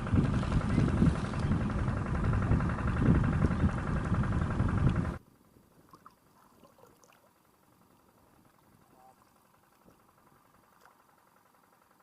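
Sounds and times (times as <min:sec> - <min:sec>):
motor engine rumbling: 0:00.0 - 0:12.0
faint ticks: 0:09.3 - 0:12.0.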